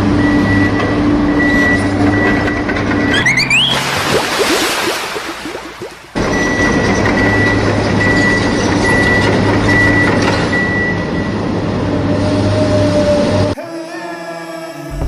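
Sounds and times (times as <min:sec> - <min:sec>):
truck engine rumble: 0:00.0 - 0:04.2, 0:05.4 - 0:13.6
backup beeper beeping: 0:01.4 - 0:04.6.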